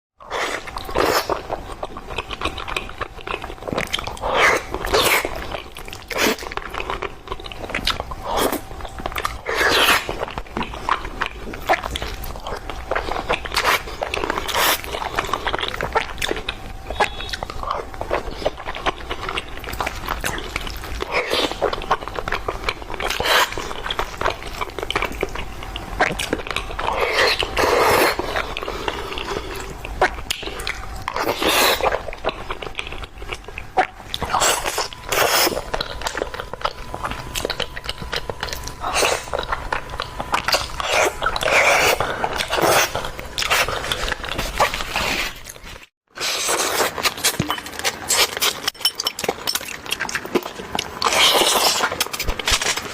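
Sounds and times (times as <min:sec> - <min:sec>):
crunchy chewing: 0:00.2 - 0:52.9.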